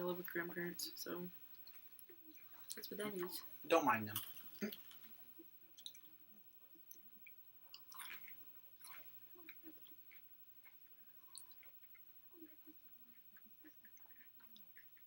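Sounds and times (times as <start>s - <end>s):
chewing and biting food: 6.9s - 15.0s.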